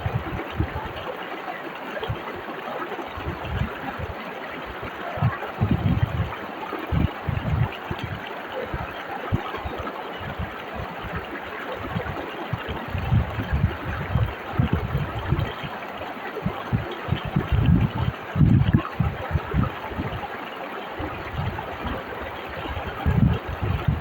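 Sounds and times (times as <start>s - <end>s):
low thuds and rumbles: 5.6s - 6.3s.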